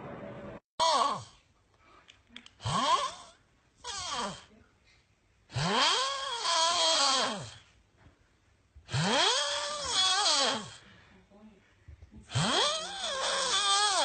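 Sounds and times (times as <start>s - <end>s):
person snoring in pitched moans: 0.8s - 1.4s, 2.6s - 4.5s, 5.5s - 7.6s, 8.9s - 10.8s, 12.3s - 14.0s.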